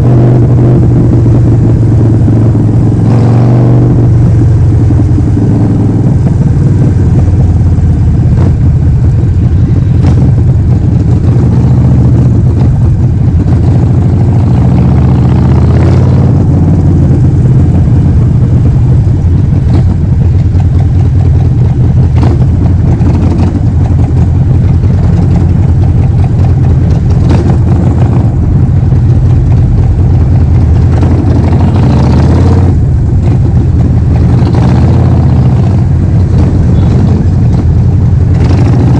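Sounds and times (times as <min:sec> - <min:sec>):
motorcycle engine under way: 0:00.0 - 0:38.9.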